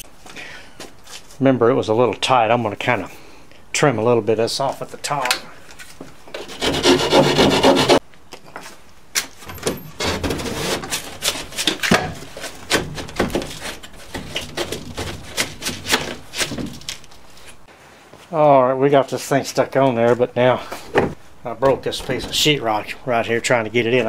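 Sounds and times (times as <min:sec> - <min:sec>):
wood rasping: 0:06.3 - 0:08.0, 0:09.9 - 0:16.7
wood knocking and scraping on drywall: 0:09.5 - 0:17.1.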